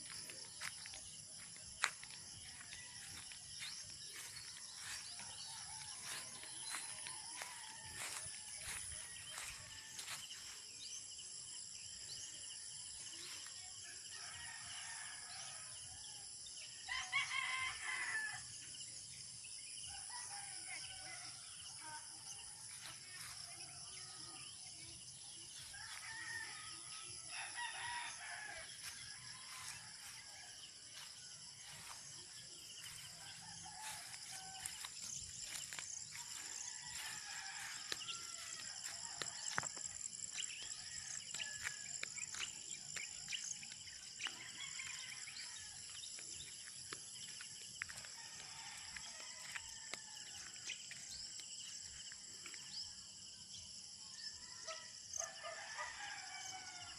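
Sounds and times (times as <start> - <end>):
roosters crowing: 16.9 - 18.5, 25.7 - 30.8, 32.7 - 39.9, 48.0 - 50.7, 54.6 - 56.9.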